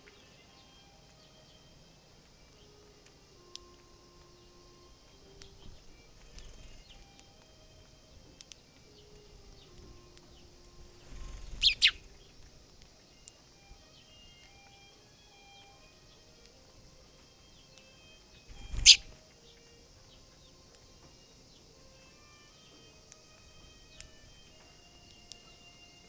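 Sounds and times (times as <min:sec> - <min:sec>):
soft background music: 0:00.0 - 0:26.0
bird pecking clicks: 0:11.1 - 0:12.0, 0:18.5 - 0:19.1
sharp bird chirps: 0:11.1 - 0:12.2, 0:18.5 - 0:19.2.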